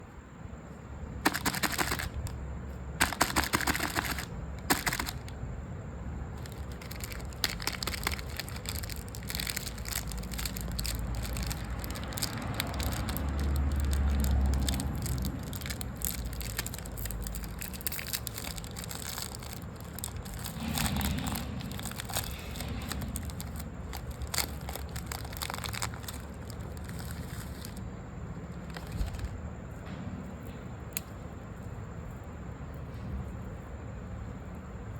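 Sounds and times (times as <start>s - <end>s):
packaging crinkling: 1.2s - 2.4s, 3.0s - 5.4s, 6.4s - 27.8s, 28.5s - 29.4s
snacks crunching: 6.4s - 27.8s.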